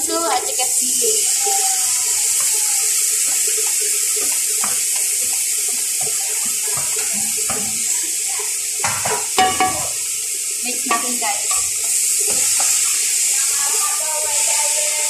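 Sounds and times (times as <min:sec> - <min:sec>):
vegetables sizzling in hot oil: 0:00.0 - 0:15.0
utensil knocking: 0:02.4 - 0:07.9, 0:08.8 - 0:10.1, 0:10.8 - 0:12.8.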